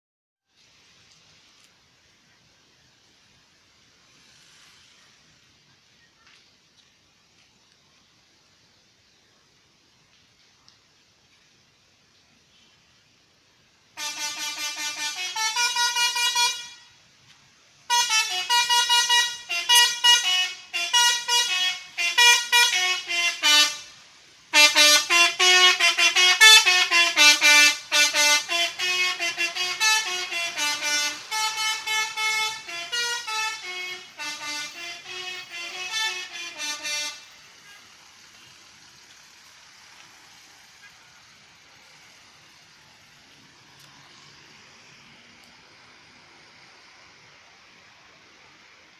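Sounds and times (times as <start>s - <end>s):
bus horn playing a tune: 14.0s - 17.0s, 17.9s - 38.6s.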